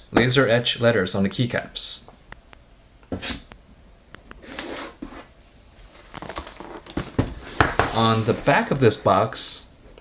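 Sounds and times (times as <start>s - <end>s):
cardboard box rustling and scraping: 5.9s - 8.7s.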